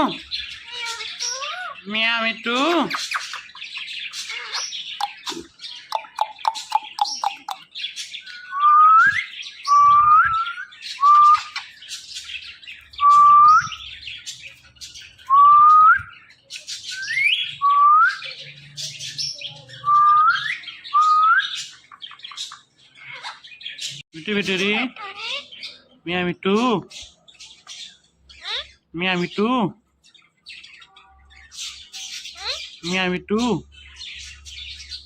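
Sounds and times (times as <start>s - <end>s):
parrot chattering chirps: 0.2s - 8.5s, 21.7s - 25.9s, 28.3s - 29.4s, 30.8s - 33.6s.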